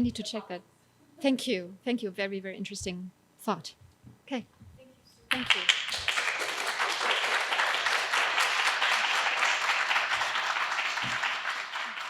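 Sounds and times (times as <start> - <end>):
audience applauding: 5.3 - 12.0.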